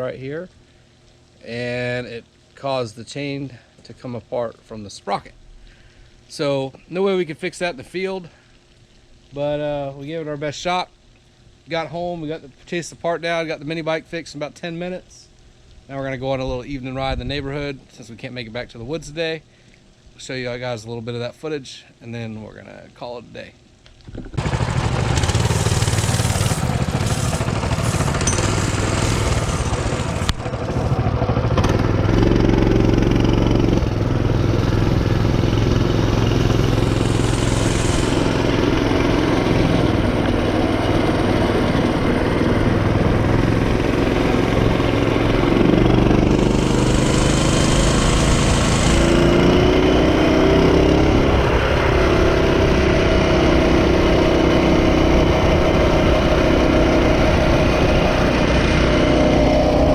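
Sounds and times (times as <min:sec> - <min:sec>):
mini bike engine running: 0:24.2 - 0:59.9.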